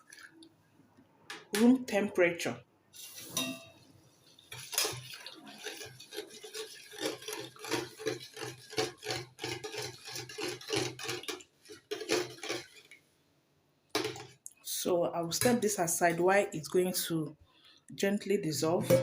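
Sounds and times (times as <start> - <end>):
utensil stirring and scraping bowl: 3.0 - 13.0.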